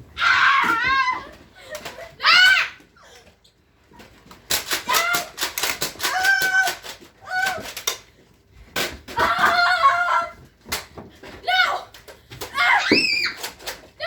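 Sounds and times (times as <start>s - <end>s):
children shouting and squealing: 0.2s - 3.2s, 9.2s - 10.4s, 12.5s - 13.6s.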